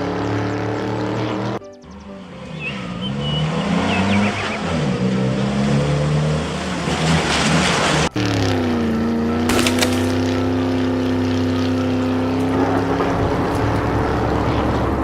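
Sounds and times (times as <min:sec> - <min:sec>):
engine pitch falling: 0:00.0 - 0:15.0
cartoon engines revving: 0:02.4 - 0:15.0.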